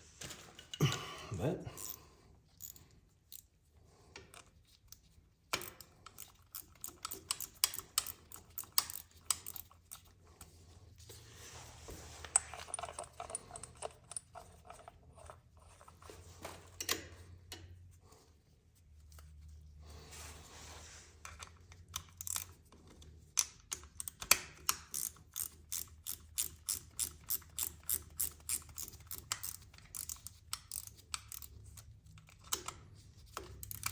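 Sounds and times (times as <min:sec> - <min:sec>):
ratcheting wrench clicking: 0:01.8 - 0:02.0, 0:05.6 - 0:10.0, 0:21.9 - 0:22.5, 0:23.4 - 0:32.8.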